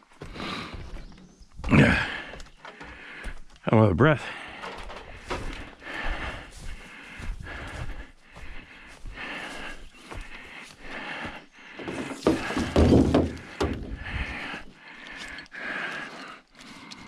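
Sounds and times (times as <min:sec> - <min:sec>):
man breathing hard: 0:00.0 - 0:01.0, 0:01.6 - 0:03.6, 0:04.2 - 0:17.0
loud thump and clatter: 0:11.8 - 0:14.1.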